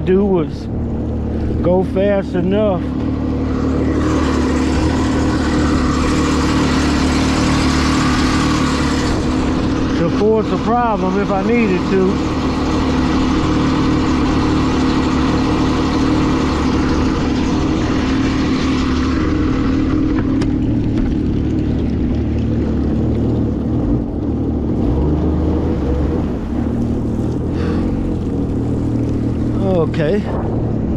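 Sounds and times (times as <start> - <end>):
boat motor running hard: 0.0 - 30.9
rushing water: 2.9 - 30.2
wind noise: 24.6 - 30.9.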